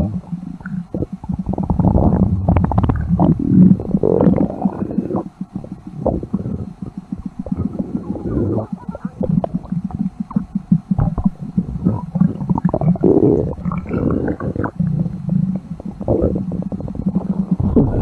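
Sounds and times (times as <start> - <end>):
stomach growling and gurgling: 0.0 - 18.0.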